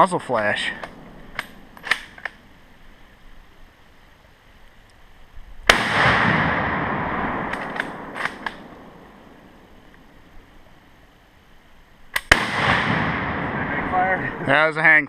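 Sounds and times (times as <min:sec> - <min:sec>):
faint rifle clicks: 0:00.4 - 0:02.4, 0:07.4 - 0:09.2, 0:12.0 - 0:12.4
rifle shot with rolling echo: 0:05.6 - 0:09.8, 0:12.1 - 0:14.4.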